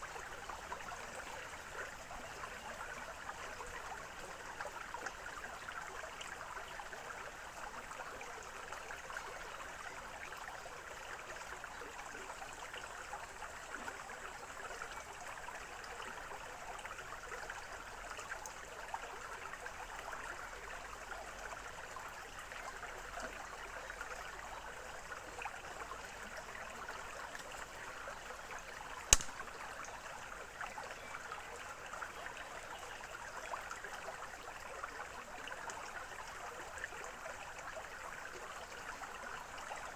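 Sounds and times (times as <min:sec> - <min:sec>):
stream babbling and trickling: 0:00.0 - 0:39.9
sharp click: 0:29.1 - 0:29.4.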